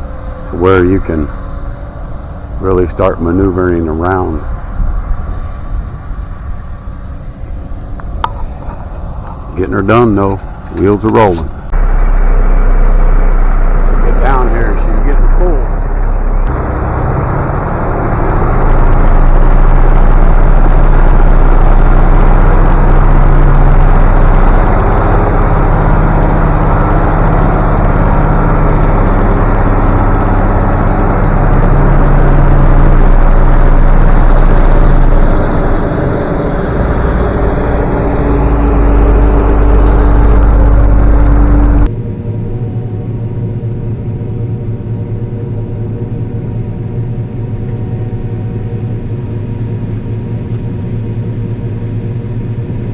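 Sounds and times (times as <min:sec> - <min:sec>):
threshing noise: 0:00.0 - 0:41.9
combine harvester engine drone: 0:00.0 - 0:52.9.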